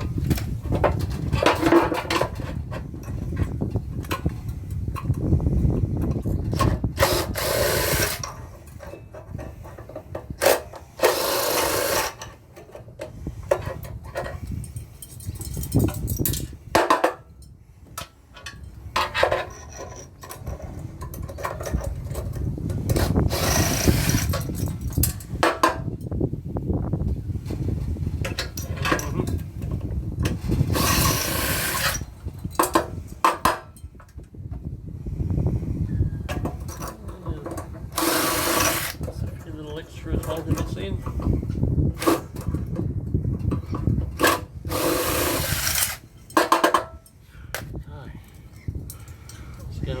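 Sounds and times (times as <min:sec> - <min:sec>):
tool grinding and scraping metal: 0:00.0 - 0:17.2, 0:17.8 - 0:25.9, 0:28.2 - 0:34.0, 0:36.0 - 0:47.0
handling knocks and clicks: 0:08.0 - 0:26.2.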